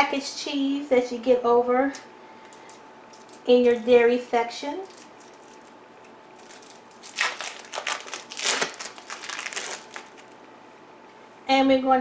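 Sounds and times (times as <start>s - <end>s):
plastic wrapping crinkling: 2.5s - 10.5s.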